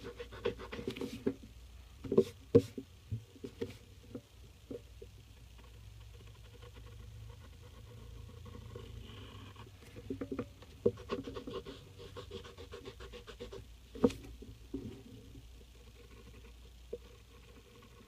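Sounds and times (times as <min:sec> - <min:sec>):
pencil strokes on paper: 0:00.0 - 0:01.4, 0:10.8 - 0:14.2.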